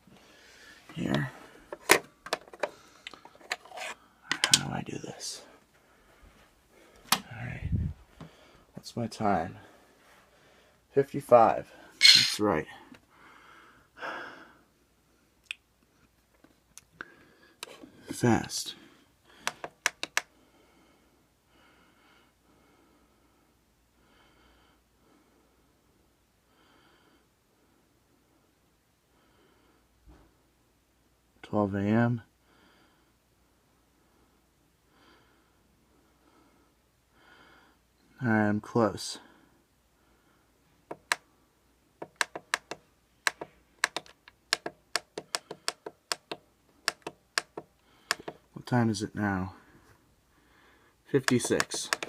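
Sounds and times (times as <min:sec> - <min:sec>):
faint slow breathing: 0:00.1 - 0:01.7, 0:02.6 - 0:03.4, 0:05.4 - 0:08.8, 0:09.5 - 0:10.9, 0:12.9 - 0:14.8, 0:18.8 - 0:25.9, 0:32.4 - 0:33.2, 0:34.0 - 0:38.0, 0:49.5 - 0:51.0
alarm clock button clicking: 0:42.2 - 0:48.4.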